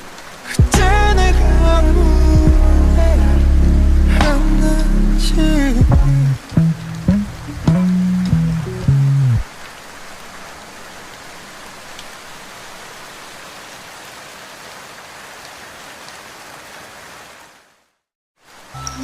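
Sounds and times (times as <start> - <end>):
steady rain falling: 0.0 - 19.0
song note: 0.6 - 9.4.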